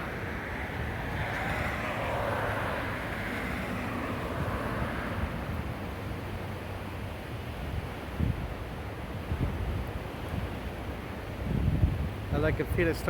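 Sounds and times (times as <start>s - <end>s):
jet engines whining: 0.0s - 5.7s
wind on microphone: 0.0s - 6.5s, 7.4s - 8.6s, 9.2s - 10.6s, 11.4s - 13.0s.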